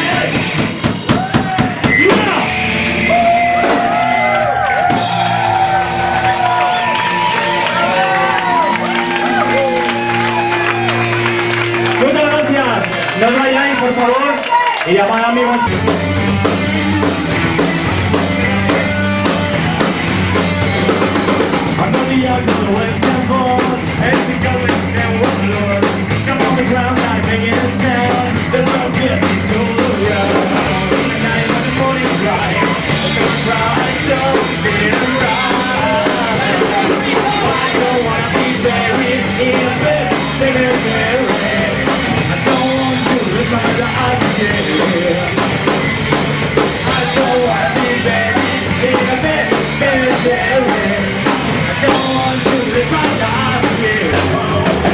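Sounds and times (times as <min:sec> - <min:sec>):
live rock band playing: 0:00.0 - 0:14.3, 0:15.5 - 0:54.9.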